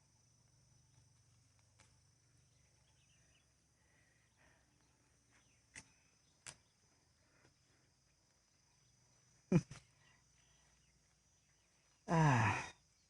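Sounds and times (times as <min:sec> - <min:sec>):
faint sharp clicks: 0:05.7 - 0:06.7.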